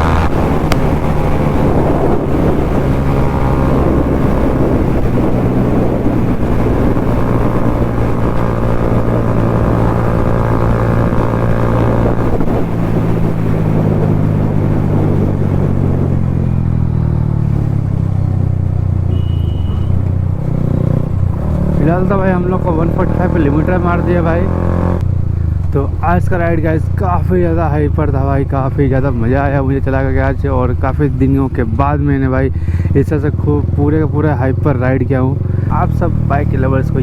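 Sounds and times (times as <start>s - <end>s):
motorcycle engine at high revs: 0.0s - 25.3s
wind noise: 0.0s - 26.6s.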